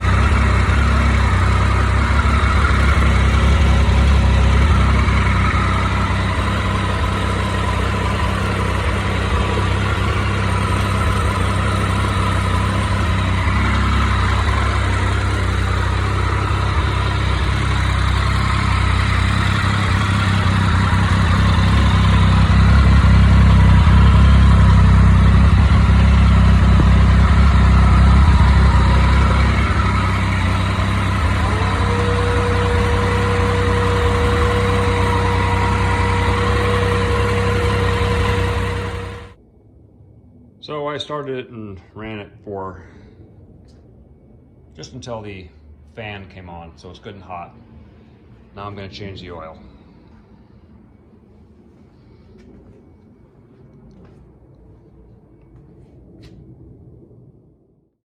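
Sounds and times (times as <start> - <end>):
motorcycle engine idling: 0.0 - 39.4.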